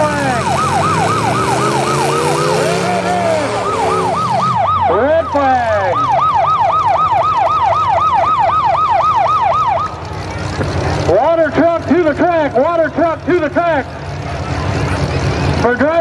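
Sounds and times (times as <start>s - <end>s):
siren yelping: 0.0s - 10.1s
engine rumble: 0.0s - 16.0s.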